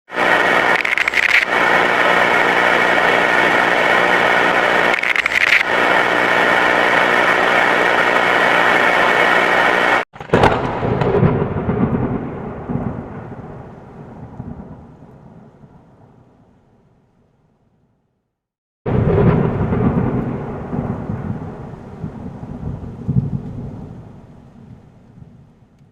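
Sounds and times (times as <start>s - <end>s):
loud rushing noise: 0.1s - 10.1s
thunderclap with deep rumble: 10.2s - 16.9s, 18.9s - 25.9s.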